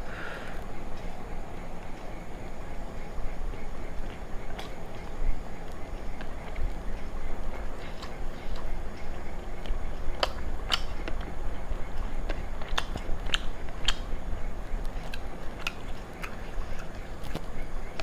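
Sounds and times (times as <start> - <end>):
person chewing food: 0.0 - 18.0
wet mouth clicks and smacks: 4.0 - 11.3, 11.9 - 17.6.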